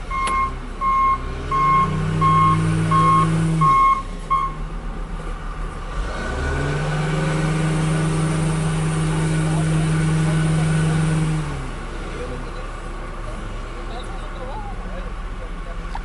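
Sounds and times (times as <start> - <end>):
diesel engine running: 0.0 - 16.0
backup alarm beeping: 0.1 - 4.6.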